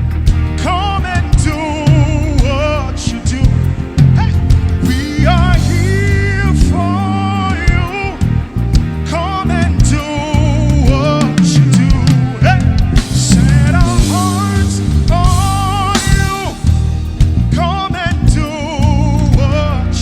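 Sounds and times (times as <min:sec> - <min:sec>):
gospel band playing: 0:00.0 - 0:20.0.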